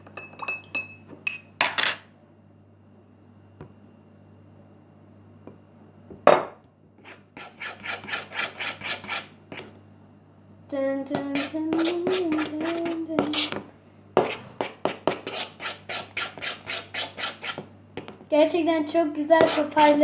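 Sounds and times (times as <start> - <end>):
utensil scraping slime in bowl: 7.0 - 9.7, 11.1 - 13.6, 14.2 - 17.6, 19.4 - 20.0.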